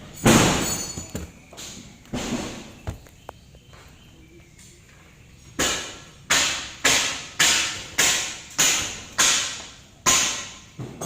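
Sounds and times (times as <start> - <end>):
sharp evenly spaced knocks: 5.6 - 11.0.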